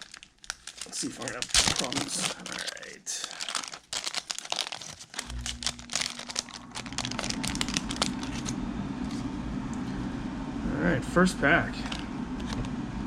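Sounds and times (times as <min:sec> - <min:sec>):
plastic wrapper crinkling and tearing: 0:00.0 - 0:08.6
low steady rumble: 0:05.1 - 0:13.0.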